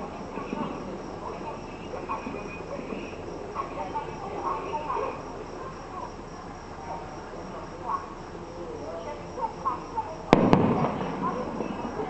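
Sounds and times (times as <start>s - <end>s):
crickets chirring: 0.0s - 12.0s
firework bangs: 10.2s - 12.0s.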